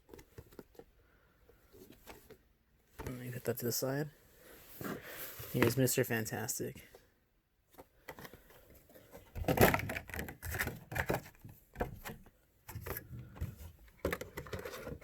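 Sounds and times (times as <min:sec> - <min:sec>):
cardboard and plastic rustling: 0:00.0 - 0:03.6, 0:07.7 - 0:15.0.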